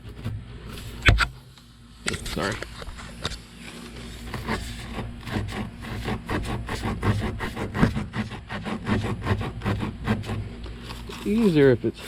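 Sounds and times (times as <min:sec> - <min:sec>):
steel reamer rasping in rubber tire: 0:04.0 - 0:12.0.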